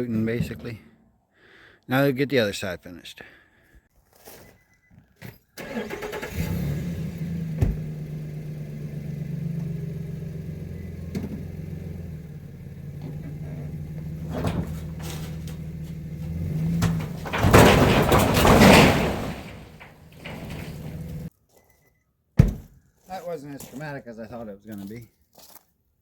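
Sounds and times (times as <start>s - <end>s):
van engine running: 5.7s - 21.3s.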